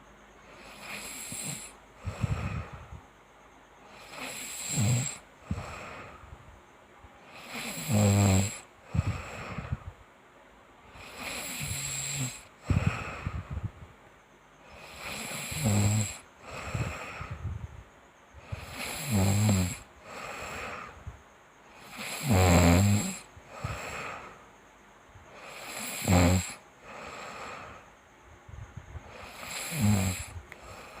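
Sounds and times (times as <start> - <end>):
person snoring: 0.5 - 2.9, 3.9 - 6.2, 7.3 - 9.8, 10.9 - 13.7, 14.7 - 17.4, 18.4 - 21.0, 21.8 - 24.4, 25.4 - 27.8, 29.0 - 31.0
breathy exhale: 0.5 - 3.1, 5.4 - 6.5, 8.8 - 10.0, 12.6 - 13.9, 16.4 - 17.7, 20.0 - 21.2, 23.4 - 24.5, 29.0 - 31.0.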